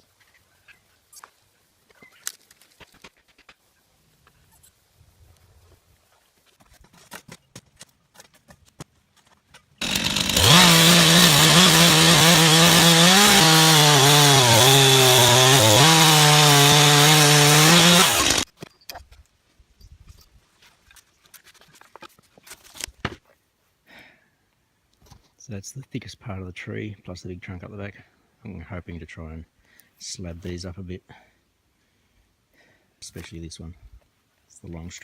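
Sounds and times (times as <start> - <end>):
chainsaw cutting wood: 9.8 - 18.5.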